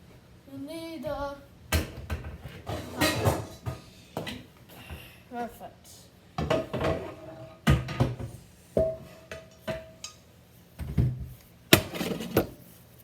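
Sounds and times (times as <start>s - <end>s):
metal pots and pans clanking: 2.0s - 4.4s, 6.4s - 10.2s, 11.8s - 12.6s.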